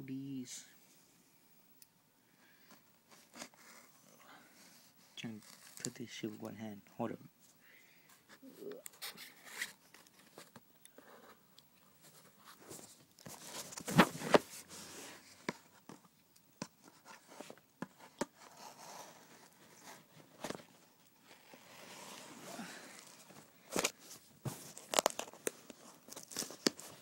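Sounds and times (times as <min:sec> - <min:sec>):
knife opening cardboard package: 0:24.7 - 0:27.0.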